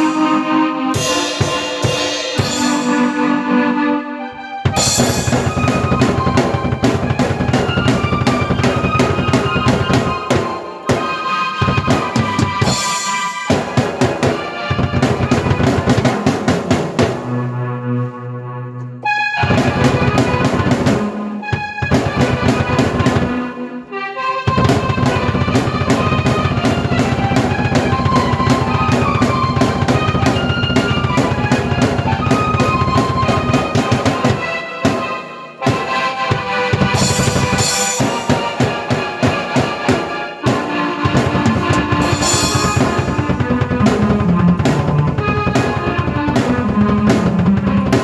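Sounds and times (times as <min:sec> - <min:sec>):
keyboard melody: 0:00.0 - 0:48.0
drum kick and snare beat: 0:01.0 - 0:03.1, 0:04.7 - 0:17.4, 0:19.4 - 0:23.5, 0:24.5 - 0:48.0
crash cymbals ringing: 0:01.0 - 0:03.4, 0:12.6 - 0:13.5, 0:37.0 - 0:38.6, 0:42.0 - 0:43.2.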